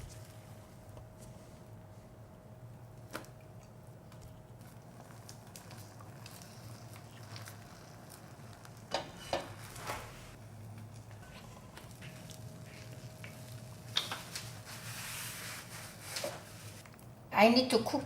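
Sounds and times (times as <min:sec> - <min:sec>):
omelette cooking in a frying pan: 0:03.3 - 0:16.8.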